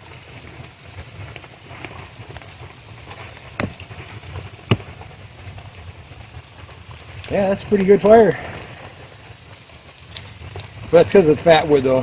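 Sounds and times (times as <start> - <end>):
steady rain: 0.0 - 12.0.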